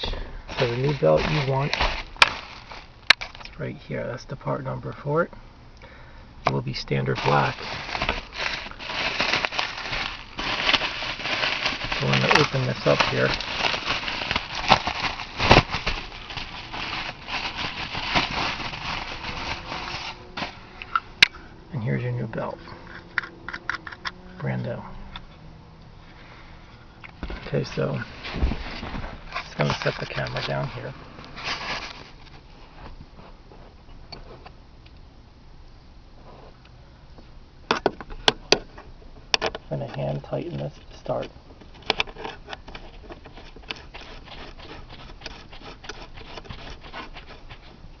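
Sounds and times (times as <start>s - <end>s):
packaging crinkling and rustling: 0.5s - 3.5s, 7.0s - 20.6s, 27.2s - 32.5s, 40.2s - 47.8s
faint handling sounds: 0.5s - 3.7s, 6.6s - 24.6s, 26.0s - 34.6s
packaging snapping: 7.2s - 20.2s.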